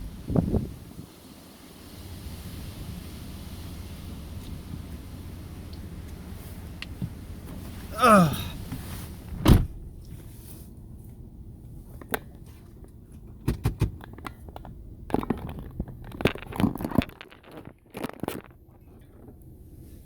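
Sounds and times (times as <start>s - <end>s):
low steady rumble: 0.0s - 16.7s
clicks knocks and crunches of handling: 12.0s - 19.4s.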